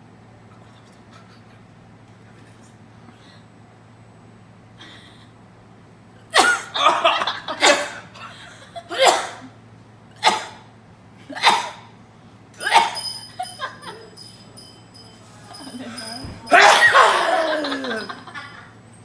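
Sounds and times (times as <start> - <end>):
person sneezing: 7.6 - 8.1, 8.9 - 9.5, 10.2 - 10.7, 11.4 - 11.9, 12.6 - 13.0, 16.5 - 17.8.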